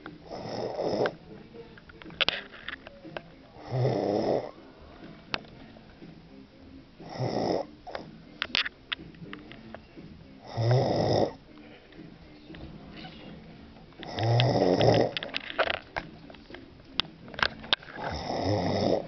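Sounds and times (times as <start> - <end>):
person snoring: 0.2 - 1.2, 3.5 - 5.1, 7.0 - 8.1, 10.4 - 11.4, 14.0 - 15.2, 18.0 - 19.0.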